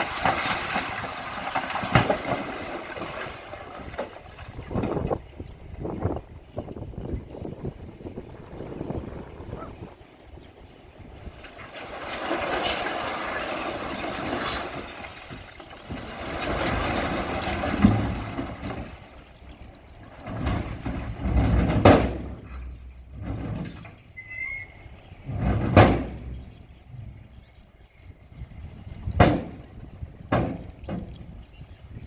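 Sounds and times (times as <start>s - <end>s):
bulldozer scraping rock: 0.0s - 5.2s, 11.0s - 27.2s
high squeal: 24.2s - 24.9s.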